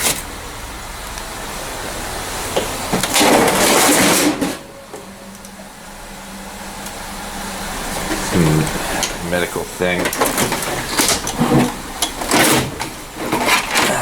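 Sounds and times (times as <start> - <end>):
junk rummaged in dumpster: 0.0 - 0.6, 2.0 - 5.5, 8.0 - 14.0.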